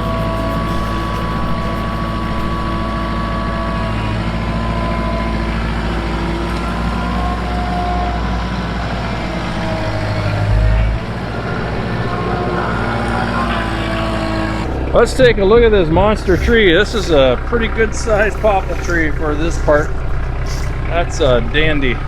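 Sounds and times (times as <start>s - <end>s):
tractor diesel engine running: 0.0s - 22.0s.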